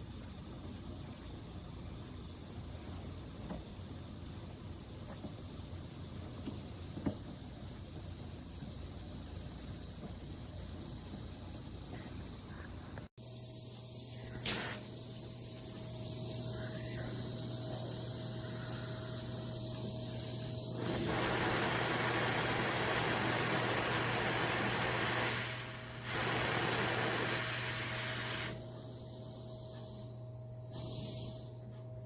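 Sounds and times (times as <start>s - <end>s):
torch flame hissing: 13.4s - 31.6s.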